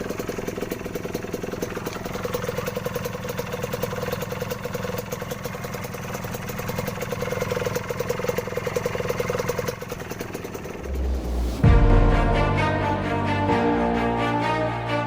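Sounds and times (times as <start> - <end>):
two-stroke engine idling: 0.0 - 11.0.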